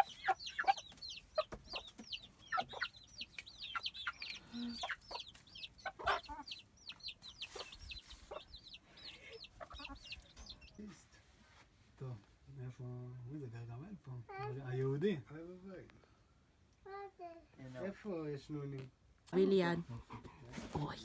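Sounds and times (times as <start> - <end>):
chickens clucking: 0.0 - 10.9.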